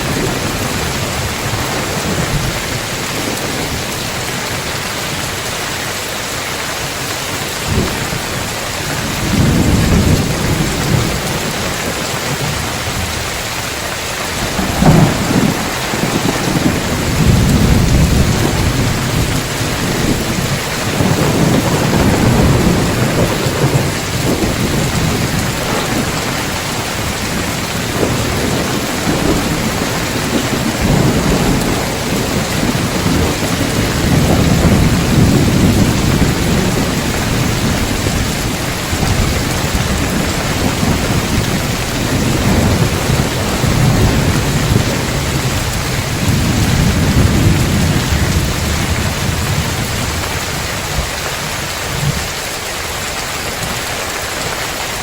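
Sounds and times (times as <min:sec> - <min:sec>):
heavy rain on roof tiles: 0:00.0 - 0:55.0
thunder rumbling: 0:00.0 - 0:55.0
sharp thunderclap: 0:07.7 - 0:13.5, 0:14.3 - 0:51.1.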